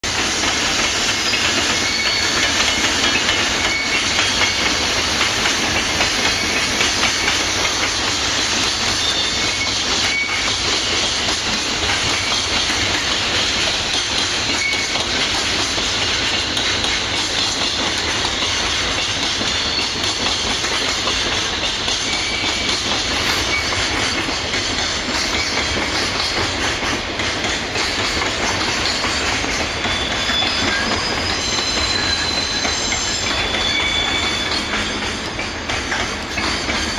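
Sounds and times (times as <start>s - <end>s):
freight train wheels rumbling: 0.0s - 36.9s
high-pitched wheel squeals: 1.2s - 4.9s, 29.8s - 35.2s.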